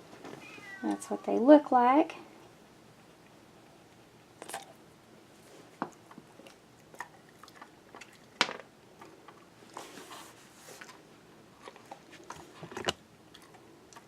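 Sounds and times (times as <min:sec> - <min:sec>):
dog chewing a treat: 0:04.2 - 0:04.8, 0:05.9 - 0:09.9, 0:10.7 - 0:14.0.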